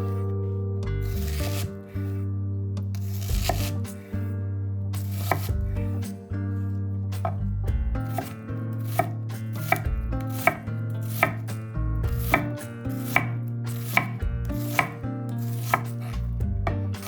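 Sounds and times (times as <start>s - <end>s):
knife chopping on cutting board: 1.0s - 1.8s, 2.8s - 4.0s, 5.0s - 6.1s, 7.2s - 11.5s, 12.1s - 17.0s.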